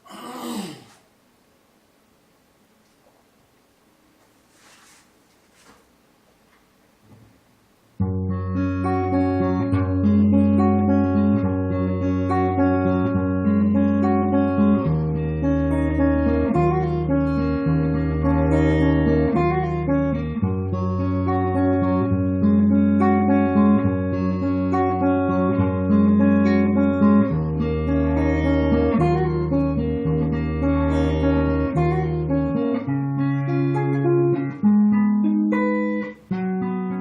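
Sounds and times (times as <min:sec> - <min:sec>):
acoustic guitar strumming chords: 0:08.0 - 0:37.0.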